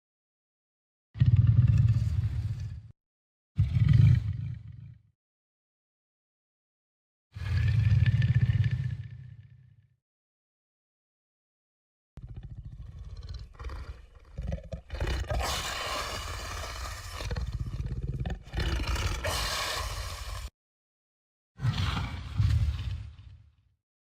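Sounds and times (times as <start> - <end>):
monster roars and growls: 14.5 - 20.5.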